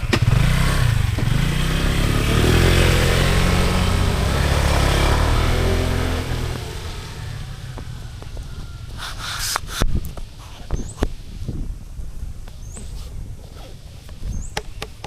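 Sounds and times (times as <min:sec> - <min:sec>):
vehicle engine running loudly: 0:00.0 - 0:09.0.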